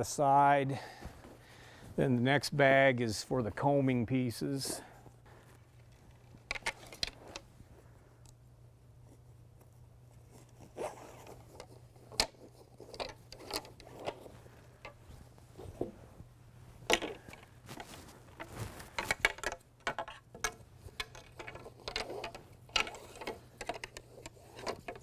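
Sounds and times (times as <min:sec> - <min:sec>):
low steady hum: 0:00.0 - 0:25.0
fabric rustling: 0:09.2 - 0:19.2.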